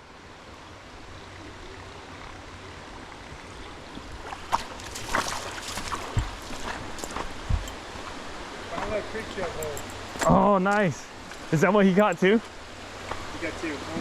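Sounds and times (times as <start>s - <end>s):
creek water running: 0.0s - 14.0s.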